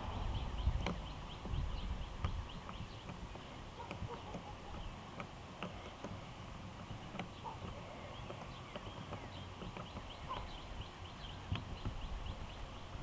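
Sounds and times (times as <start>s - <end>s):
small parts clicking and knocking: 0.8s - 10.4s.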